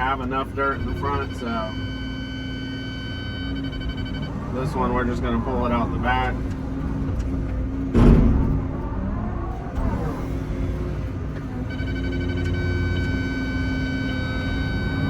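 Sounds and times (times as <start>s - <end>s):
steady high electronic tone: 0.0s - 5.9s
excavator diesel engine under load: 0.0s - 15.0s
sharp knock: 7.9s - 8.8s.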